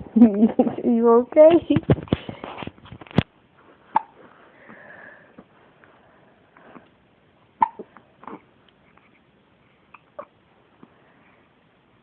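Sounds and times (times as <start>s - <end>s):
baby hiccuping: 3.9s - 4.2s, 7.6s - 9.2s, 9.9s - 10.4s.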